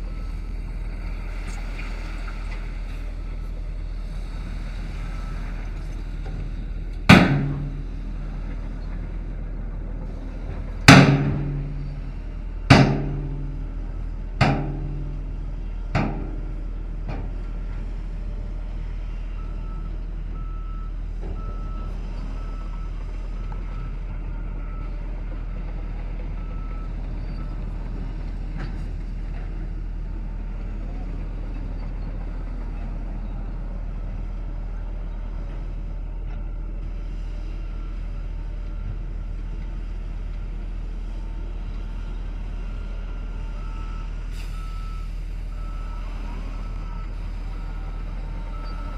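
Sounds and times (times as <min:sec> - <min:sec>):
reversing alarm beeping: 0:00.0 - 0:00.7, 0:19.3 - 0:27.6, 0:43.1 - 0:48.9
heavy machinery running: 0:00.0 - 0:48.9
loud metallic bangs: 0:07.1 - 0:08.0, 0:10.9 - 0:13.8.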